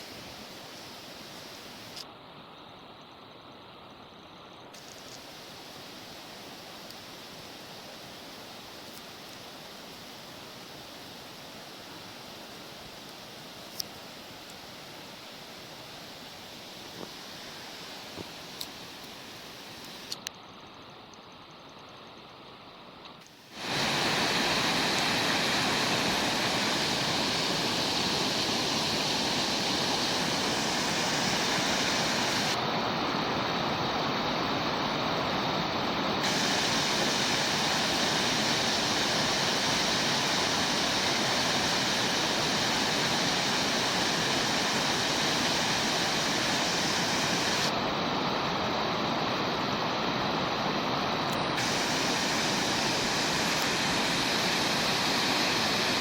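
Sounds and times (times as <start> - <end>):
mountain creek rushing: 23.5 - 56.0.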